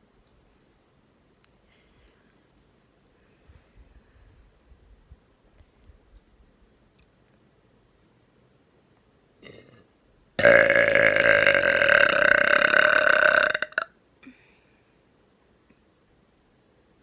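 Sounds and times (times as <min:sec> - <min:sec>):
long loud belch: 0:09.4 - 0:13.9.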